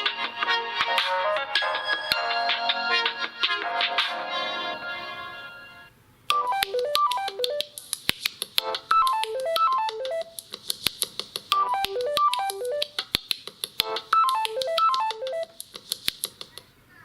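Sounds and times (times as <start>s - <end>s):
sharp clicking beats: 6.3s - 16.7s.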